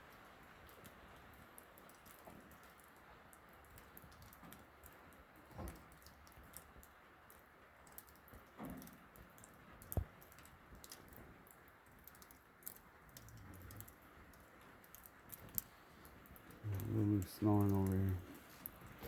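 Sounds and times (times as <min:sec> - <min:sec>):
rain on a metal roof: 0:00.0 - 0:19.0.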